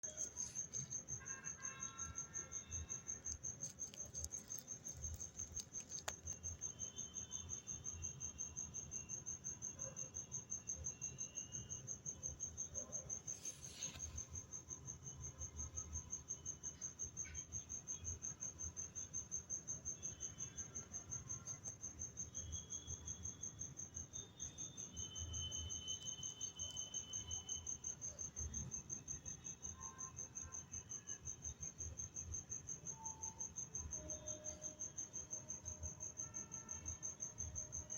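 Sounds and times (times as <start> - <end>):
insect trilling: 3.4 - 6.7.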